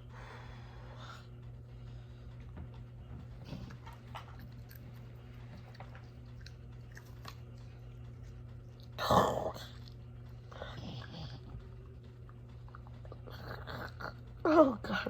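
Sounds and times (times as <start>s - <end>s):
person chewing and crunching: 3.4s - 14.4s.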